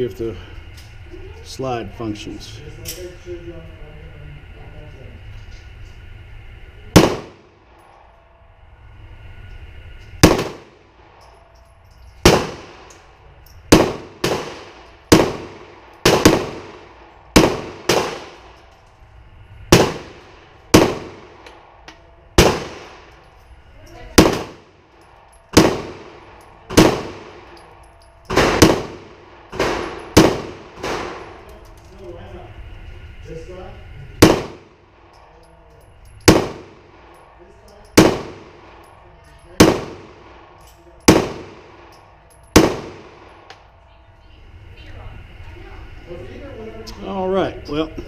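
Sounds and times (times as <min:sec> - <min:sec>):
pistol shots: 0:07.0 - 0:07.4, 0:10.2 - 0:10.8, 0:12.2 - 0:13.0, 0:13.7 - 0:18.6, 0:19.7 - 0:21.6, 0:22.4 - 0:23.1, 0:24.2 - 0:24.7, 0:25.5 - 0:27.6, 0:28.3 - 0:31.5, 0:34.2 - 0:34.7, 0:36.2 - 0:37.1, 0:38.0 - 0:38.9, 0:39.6 - 0:43.6.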